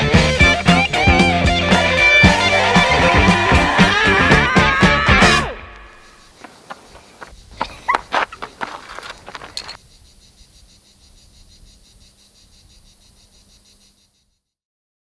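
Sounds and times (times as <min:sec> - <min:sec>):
insect chirping: 0:06.4 - 0:09.8.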